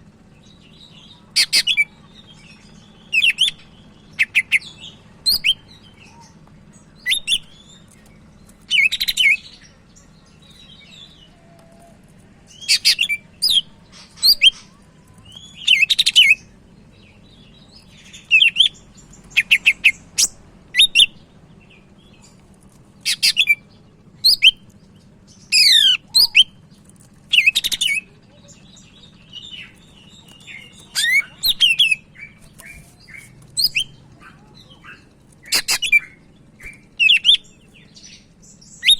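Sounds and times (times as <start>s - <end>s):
bird whistling and chattering: 1.2s - 6.3s, 7.0s - 7.7s, 8.7s - 9.6s, 12.5s - 16.5s, 18.1s - 21.2s, 23.0s - 23.6s, 24.2s - 24.6s, 25.5s - 26.6s, 27.3s - 28.1s, 28.8s - 38.9s.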